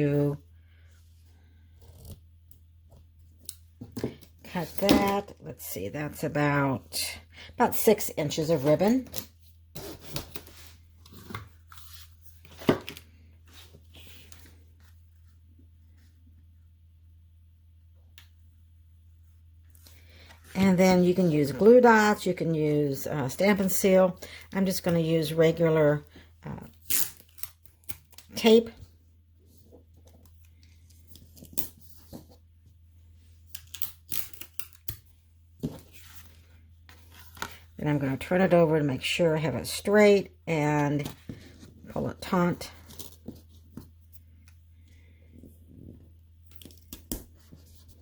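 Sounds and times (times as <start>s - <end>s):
low steady hum: 0.0s - 48.0s.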